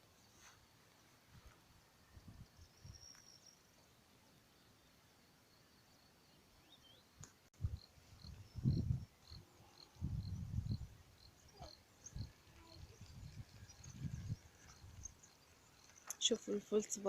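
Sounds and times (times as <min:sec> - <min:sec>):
faint high chirp: 0:02.0 - 0:05.0, 0:05.8 - 0:07.2.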